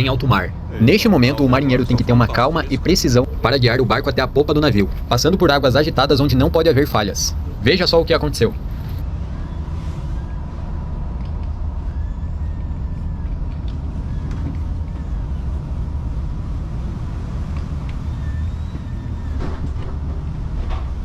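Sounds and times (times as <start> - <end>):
boat engine low rumble: 0.0 - 21.0
faint constant whine: 0.0 - 21.0.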